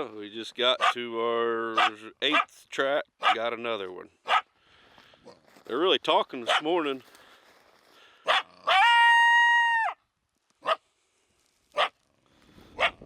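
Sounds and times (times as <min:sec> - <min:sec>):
coyote yelp: 0:00.8 - 0:01.0, 0:01.7 - 0:02.6, 0:03.2 - 0:03.4, 0:04.2 - 0:04.5, 0:08.2 - 0:10.0, 0:11.8 - 0:12.0, 0:12.8 - 0:13.0
coyote barks: 0:00.8 - 0:01.1, 0:01.7 - 0:02.6, 0:03.2 - 0:03.5, 0:04.2 - 0:04.5, 0:06.4 - 0:06.9, 0:08.2 - 0:10.0, 0:10.6 - 0:10.8, 0:11.8 - 0:12.0, 0:12.7 - 0:13.0
coyote howl: 0:08.3 - 0:10.0.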